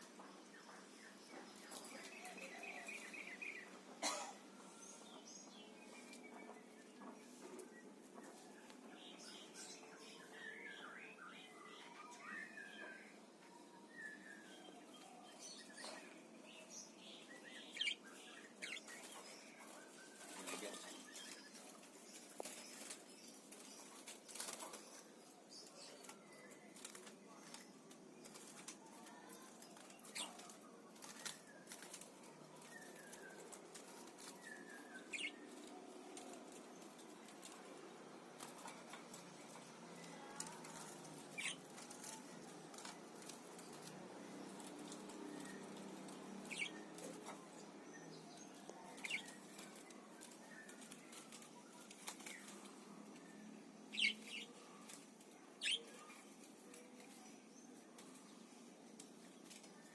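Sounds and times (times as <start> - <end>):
parakeet calls: 55.6 - 55.8.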